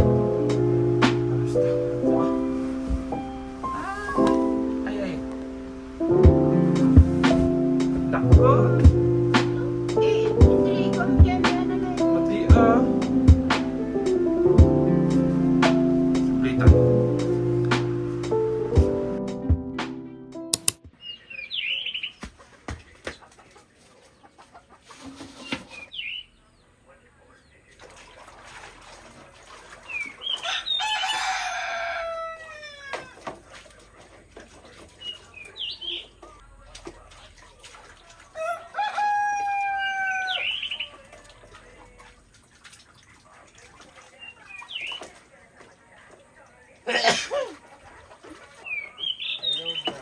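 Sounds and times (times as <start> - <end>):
small birds chirping: 0.4 - 19.1, 20.6 - 38.6, 39.4 - 46.8, 47.6 - 50.0
rooster crowing: 30.4 - 33.2, 38.4 - 41.4.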